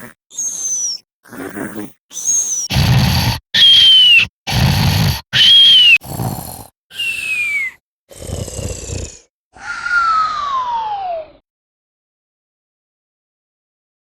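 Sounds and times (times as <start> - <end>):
cartoon rumbling snore: 0.0 - 0.5, 1.2 - 7.2, 8.1 - 9.3
falling whistle: 3.6 - 4.3, 5.4 - 6.0, 6.9 - 7.8, 9.6 - 11.4.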